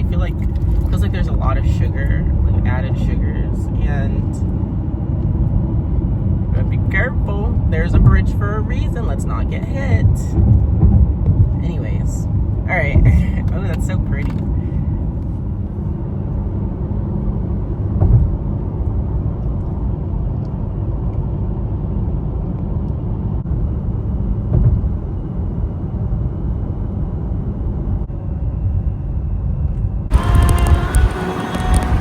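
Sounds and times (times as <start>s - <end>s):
road and engine rumble inside car: 0.0s - 32.0s.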